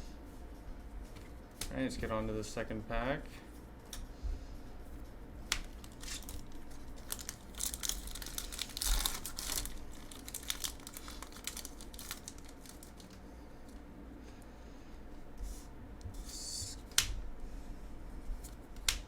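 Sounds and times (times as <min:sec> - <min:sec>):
foil wrapper tearing and crinkling: 0:05.5 - 0:13.2.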